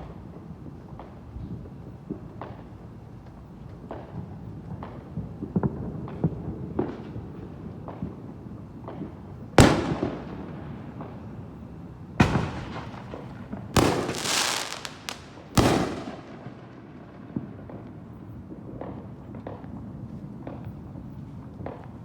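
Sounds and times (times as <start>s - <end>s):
distant fireworks rumble: 0.0s - 22.0s
fireworks crackling: 1.6s - 22.0s
fireworks bangs: 4.0s - 19.7s.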